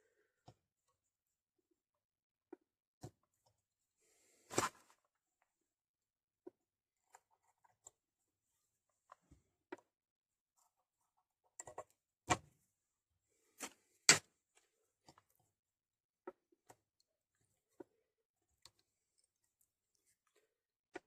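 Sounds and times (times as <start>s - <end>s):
small clicks and taps of tools: 18.6s - 21.0s.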